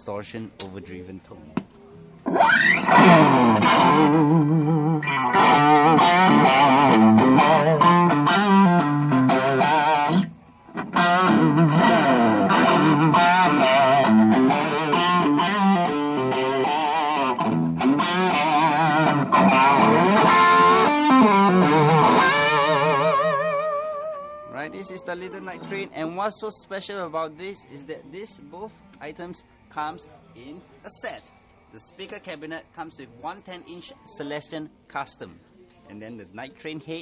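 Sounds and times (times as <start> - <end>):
overdriven electric guitar: 2.2 - 25.8.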